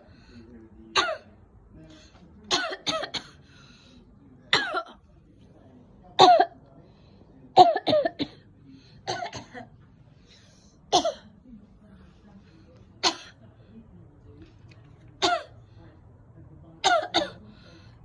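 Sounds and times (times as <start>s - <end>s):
person coughing: 9.0s - 9.7s.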